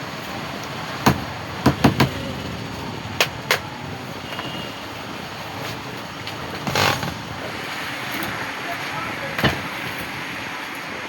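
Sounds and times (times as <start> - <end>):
steady background noise: 0.0 - 11.0
sharp knocks: 1.0 - 2.2.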